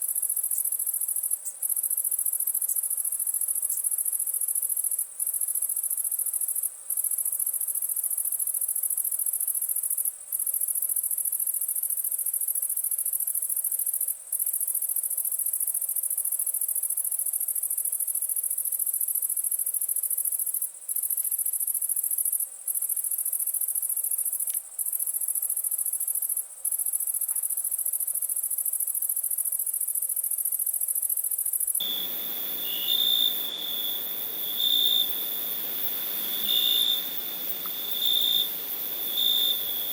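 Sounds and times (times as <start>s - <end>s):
cricket chirping: 0.0s - 39.9s
crickets trilling: 30.2s - 39.9s.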